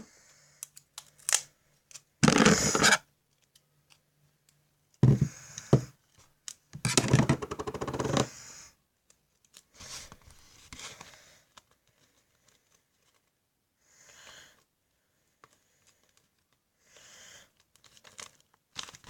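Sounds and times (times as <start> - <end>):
paper crinkling and rustling: 17.7 - 19.0.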